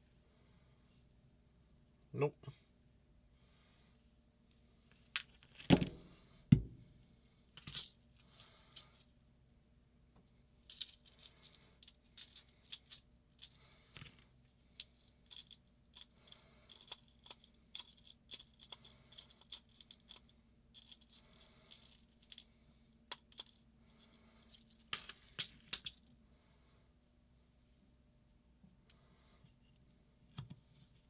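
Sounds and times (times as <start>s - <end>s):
small metal parts clinking: 7.6s - 9.1s, 10.6s - 26.2s.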